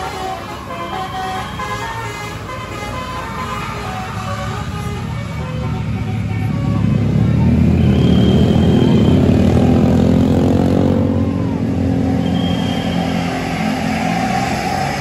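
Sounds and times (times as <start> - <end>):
bus engine passing: 0.0 - 15.0
short high whistling tone: 7.8 - 9.4, 12.1 - 13.5.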